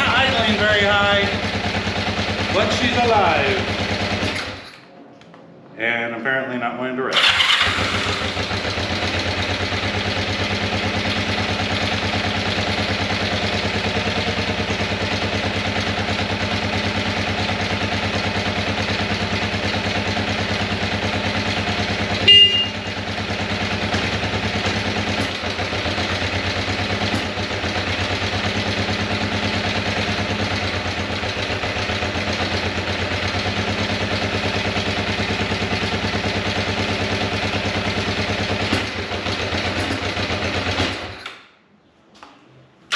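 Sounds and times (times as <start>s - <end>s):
motorcycle engine idling fast: 0.0s - 4.6s, 7.2s - 41.2s.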